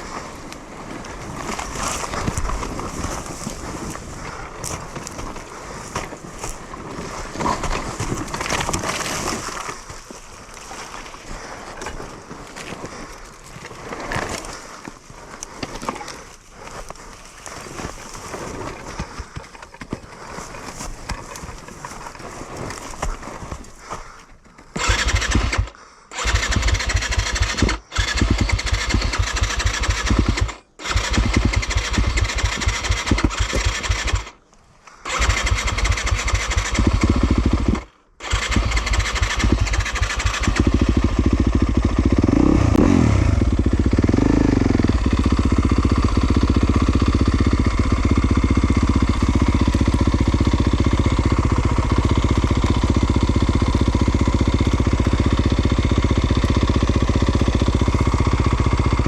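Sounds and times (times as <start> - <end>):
dirt bike engine revving: 24.8 - 34.4, 35.1 - 59.0.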